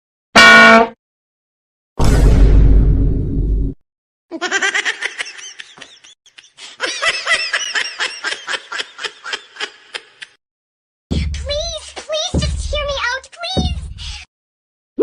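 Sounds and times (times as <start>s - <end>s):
loud deep sound: 2.0s - 3.8s
high-pitched laughter effect: 4.3s - 10.4s.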